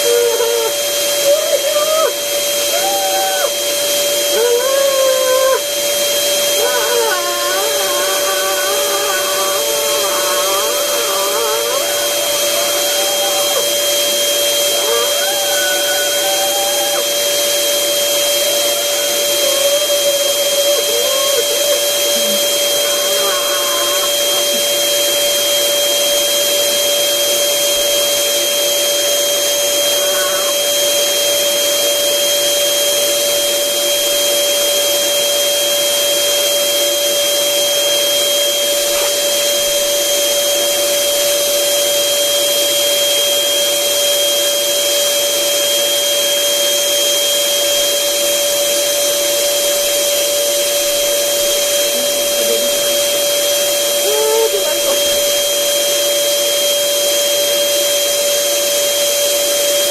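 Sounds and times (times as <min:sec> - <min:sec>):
electric air blower whining: 0:00.0 - 0:59.9.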